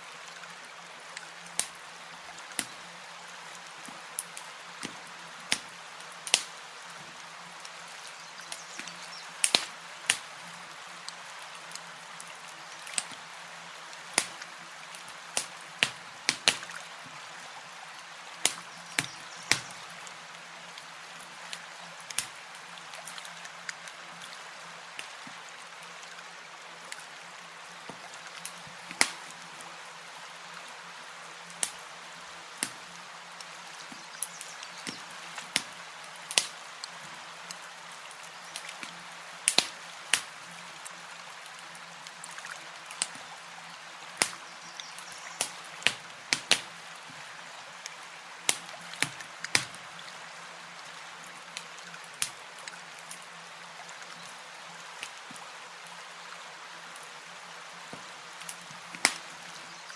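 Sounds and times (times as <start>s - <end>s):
fire steady hiss: 0.0s - 59.9s
campfire pops and snaps: 2.6s - 2.8s, 4.2s - 6.5s, 8.4s - 10.3s, 12.8s - 13.2s, 14.2s - 14.5s, 15.4s - 16.8s, 18.4s - 19.8s, 22.1s - 22.4s, 27.9s - 29.3s, 31.6s - 31.8s, 32.6s - 32.8s, 33.9s - 36.6s, 38.6s - 40.3s, 44.2s - 46.7s, 48.5s - 49.8s, 57.9s - 59.3s.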